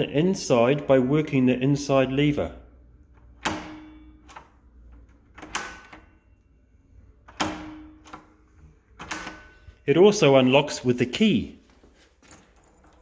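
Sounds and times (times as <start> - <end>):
door lever metallic clacks: 3.2 - 6.2, 7.2 - 8.4, 9.0 - 9.6.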